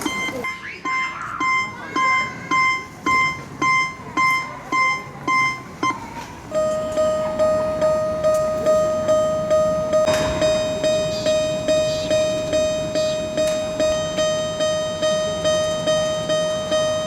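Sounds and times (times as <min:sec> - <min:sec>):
high level-crossing bell: 0:06.5 - 0:17.0
lower level-crossing bell: 0:06.5 - 0:17.0.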